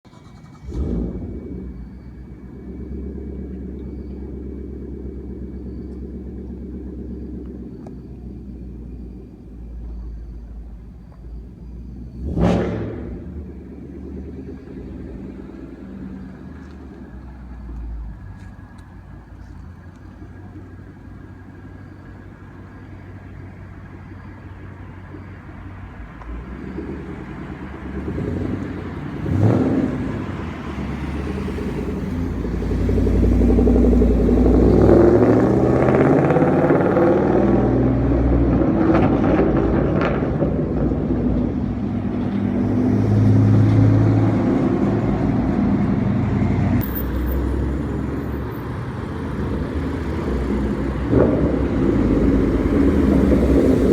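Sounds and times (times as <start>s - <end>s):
loud car engine revving: 0.2s - 8.5s, 12.0s - 16.9s, 26.2s - 53.9s.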